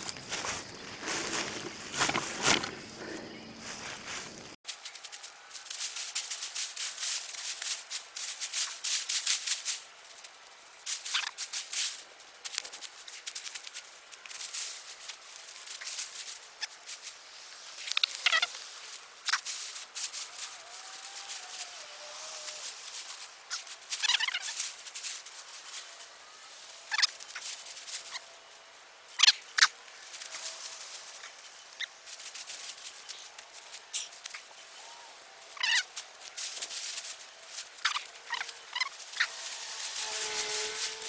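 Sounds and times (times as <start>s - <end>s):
soil and plants rustling: 0.0s - 41.0s.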